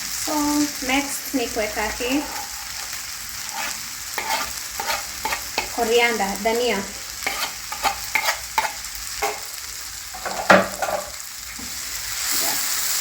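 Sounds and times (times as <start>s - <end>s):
stew sizzling: 0.0s - 13.0s
spoon stirring and scraping pot: 2.2s - 6.0s, 6.8s - 9.6s, 10.2s - 11.7s
spoon knocking against pot: 10.2s - 11.1s.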